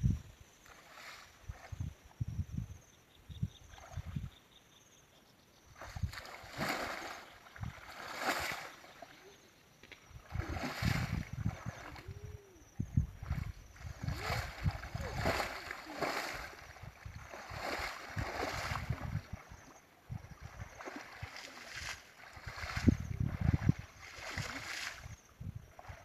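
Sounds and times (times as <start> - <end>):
water splashing and sloshing: 5.8 - 26.0.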